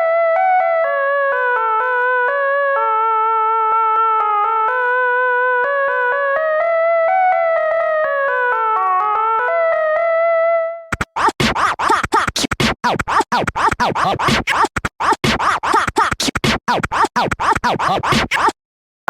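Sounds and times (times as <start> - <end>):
chopped electronic music: 10.9 - 18.6.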